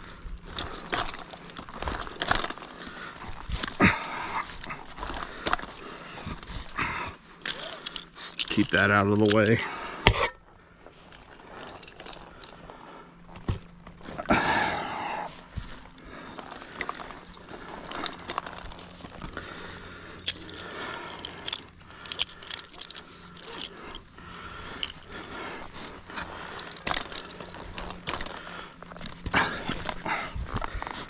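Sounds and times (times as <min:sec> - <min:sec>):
metal hardware jangling: 0:00.0 - 0:02.7, 0:03.6 - 0:09.8, 0:11.0 - 0:12.7, 0:19.8 - 0:30.1
heavy breathing: 0:00.0 - 0:31.0.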